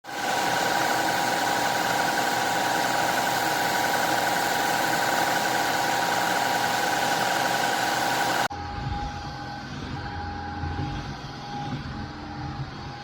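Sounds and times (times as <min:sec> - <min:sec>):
stick vacuum motor whine: 0:00.0 - 0:08.5.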